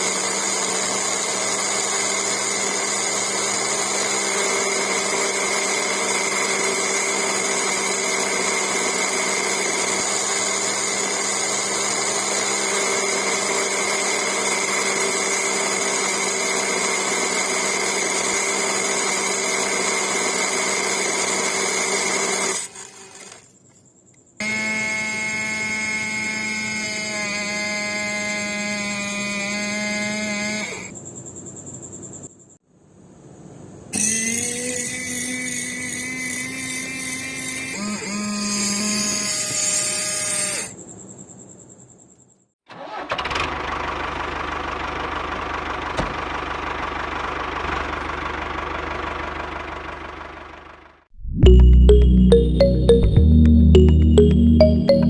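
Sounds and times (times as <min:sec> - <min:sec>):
small electric motor whining: 0:00.0 - 0:23.5, 0:24.4 - 0:31.0, 0:34.0 - 0:40.8
buzzy motor running: 0:24.4 - 0:30.9.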